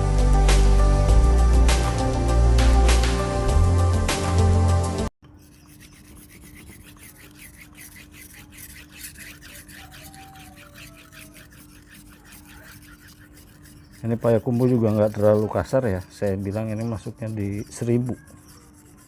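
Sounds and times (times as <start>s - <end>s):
intro music: 0.0s - 5.1s
knife scraping on whetstone: 5.2s - 19.0s.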